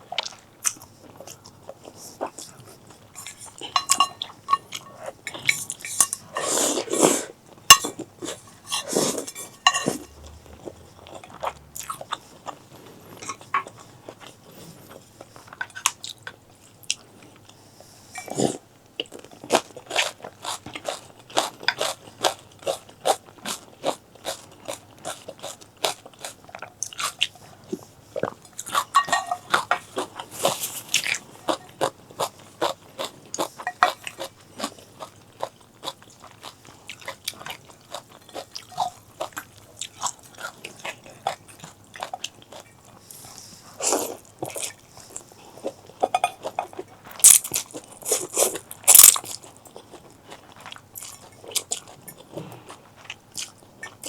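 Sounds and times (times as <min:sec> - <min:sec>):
biting and crunchy chewing: 0:18.2 - 0:54.0.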